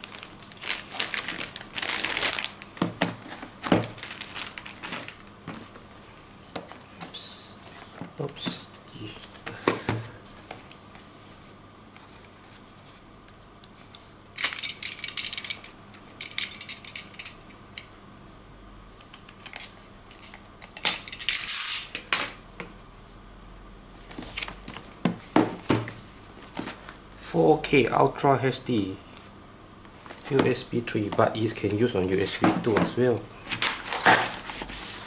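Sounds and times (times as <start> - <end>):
packaging clicks taps and rustles: 0.1 - 5.9.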